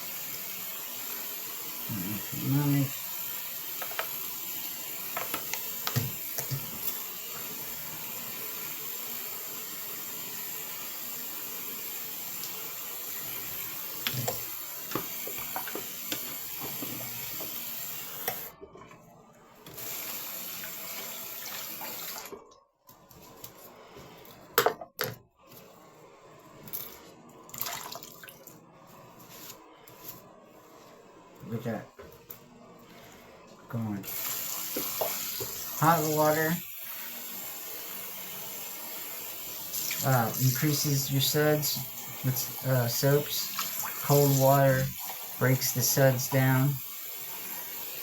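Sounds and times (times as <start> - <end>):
tap water running into sink: 0.0 - 18.5, 19.7 - 22.5, 27.5 - 28.5, 34.1 - 48.0.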